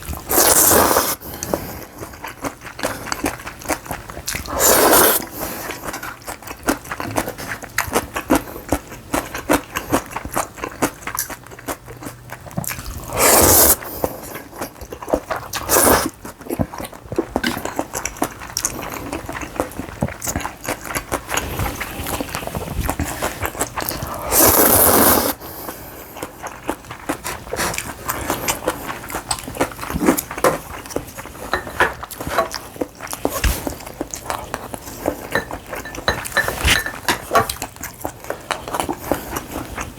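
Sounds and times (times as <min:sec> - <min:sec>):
slurping noodles: 0:00.2 - 0:02.1, 0:04.4 - 0:05.8, 0:12.8 - 0:14.4, 0:21.2 - 0:26.2
chewing with wet clicks: 0:01.2 - 0:24.9, 0:25.6 - 0:39.9.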